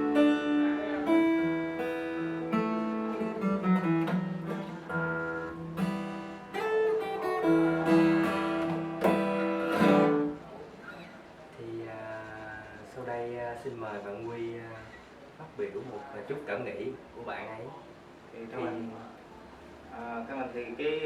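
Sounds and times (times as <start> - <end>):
strummed guitar chords: 0.0 - 10.4
fingerstyle acoustic guitar: 0.0 - 11.2.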